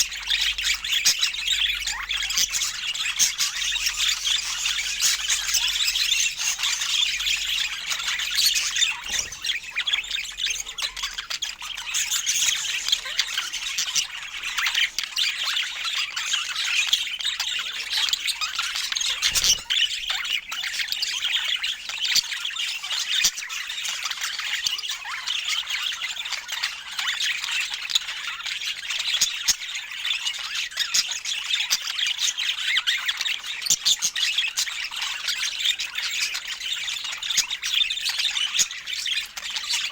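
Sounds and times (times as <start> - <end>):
budgerigars chattering and squawking: 0.0 - 39.9.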